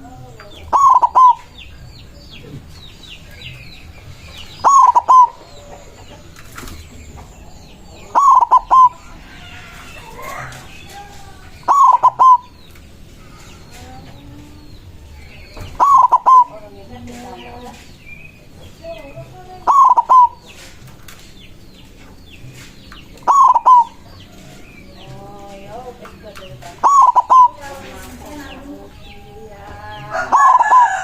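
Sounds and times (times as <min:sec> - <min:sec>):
dove cooing: 0:00.0 - 0:01.6, 0:04.5 - 0:06.4, 0:07.7 - 0:12.6, 0:13.3 - 0:17.8, 0:19.0 - 0:20.8, 0:23.1 - 0:25.7, 0:26.5 - 0:31.0
small birds chirping: 0:00.0 - 0:31.0.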